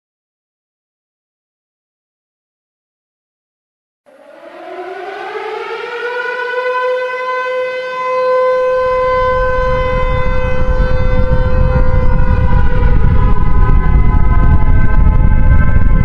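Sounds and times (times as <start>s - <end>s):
siren wailing: 4.1s - 16.0s
low rumbling noise: 7.9s - 16.0s.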